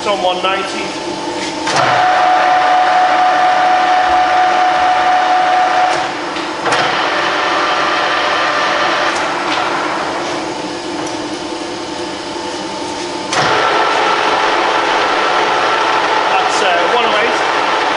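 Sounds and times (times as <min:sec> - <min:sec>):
lathe gearbox running: 0:01.4 - 0:17.9.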